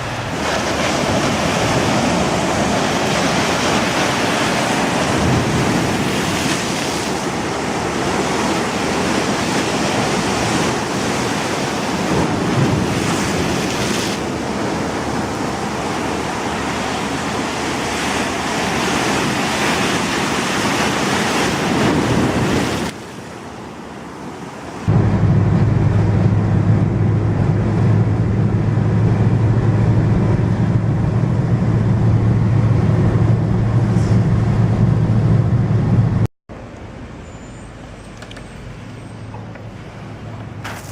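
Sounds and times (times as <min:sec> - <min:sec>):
car engine and road noise: 0:00.0 - 0:12.0, 0:23.6 - 0:40.9
surf washing on a beach: 0:00.0 - 0:31.6
wind on the microphone: 0:24.9 - 0:36.3.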